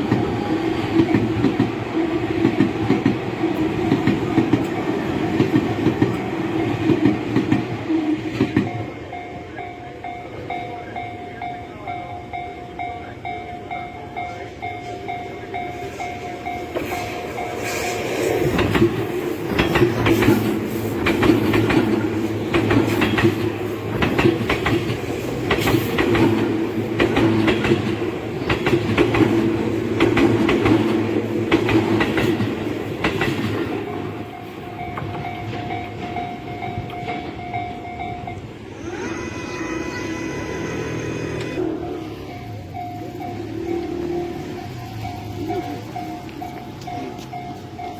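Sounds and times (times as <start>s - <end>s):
train wheels clattering over rail joints: 14.8s - 37.8s.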